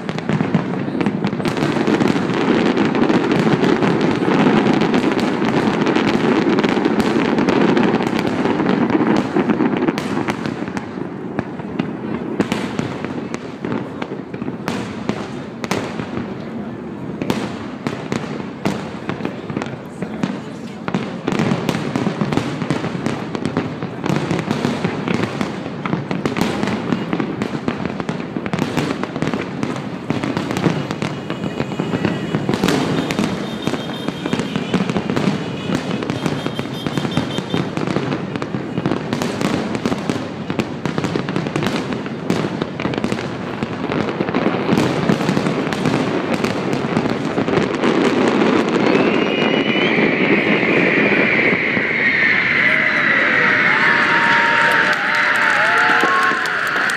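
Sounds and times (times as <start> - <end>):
fireworks bangs and crackling: 0.0 - 56.9
high falling whistle: 48.8 - 55.7.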